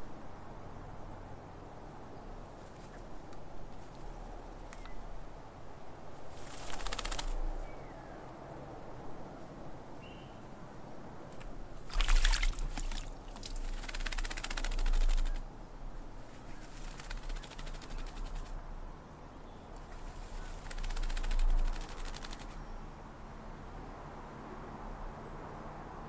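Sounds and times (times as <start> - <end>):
wing fluttering: 2.5 - 5.4, 6.1 - 8.1, 11.3 - 18.6, 19.8 - 23.0
bird splashing in water: 6.2 - 7.8, 11.3 - 18.6, 19.9 - 22.6.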